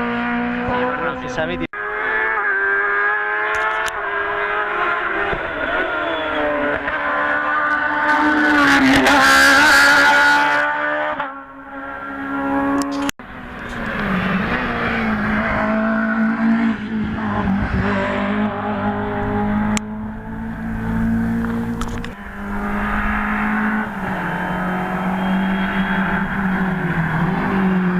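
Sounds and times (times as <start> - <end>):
rally car engine at high revs: 0.0 - 27.9
engine shifting through gears: 1.8 - 27.9.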